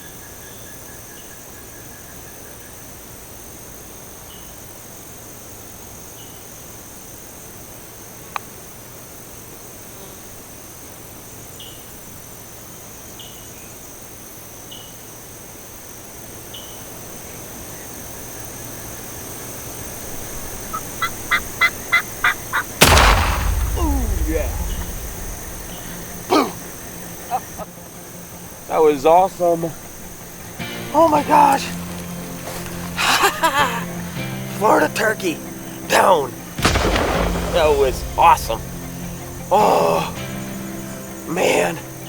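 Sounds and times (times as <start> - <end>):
turkey yelping: 20.7 - 22.7.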